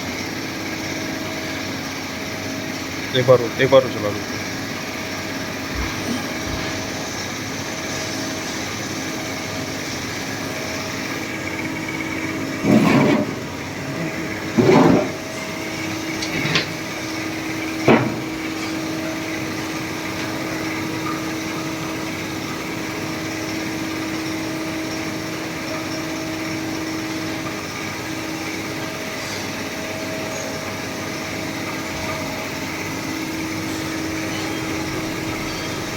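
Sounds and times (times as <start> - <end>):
machine mechanical hum: 0.0 - 35.9
steady tone: 33.0 - 35.9.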